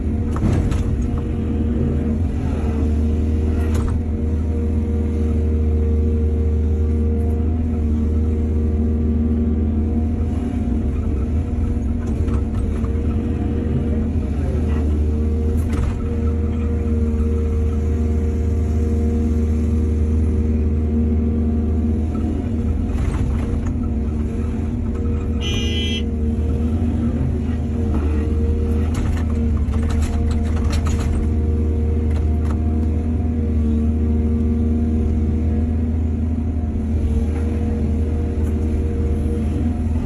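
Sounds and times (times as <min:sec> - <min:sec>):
excavator diesel engine running: 0:00.0 - 0:40.0.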